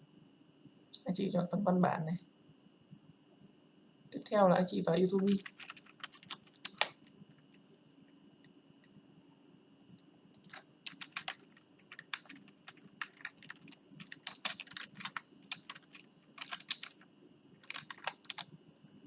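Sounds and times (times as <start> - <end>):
faint high-pitched whine: 0.0 - 19.0
typing on computer keyboard: 5.2 - 7.5, 10.3 - 18.5.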